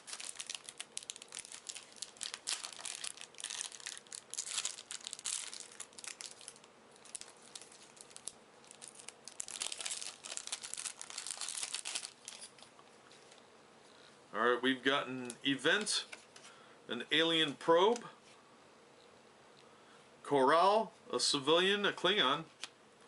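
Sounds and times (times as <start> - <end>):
foil pack tearing and crinkling: 0.0 - 12.6.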